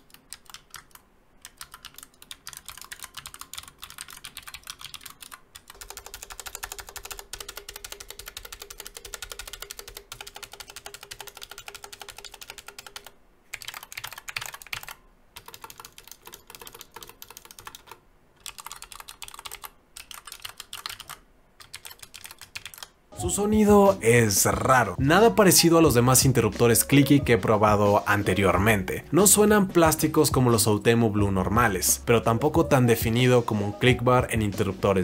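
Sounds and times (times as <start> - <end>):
fast typing on clicky keyboard: 0.0 - 23.0.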